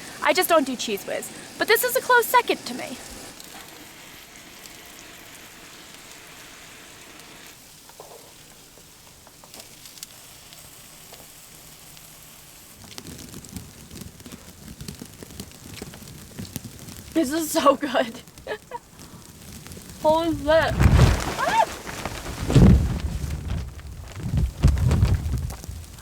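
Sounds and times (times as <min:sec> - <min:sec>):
mushrooms sizzling in a frying pan: 0:00.0 - 0:20.3
low knocks and rustles of handling: 0:20.2 - 0:26.0.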